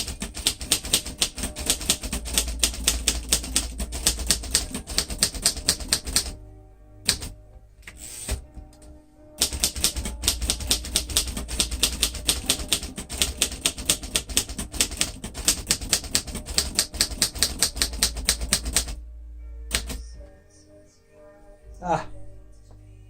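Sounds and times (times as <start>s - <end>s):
manual typewriter typing: 0.0s - 6.4s, 7.1s - 7.3s, 9.4s - 19.0s, 19.7s - 20.0s.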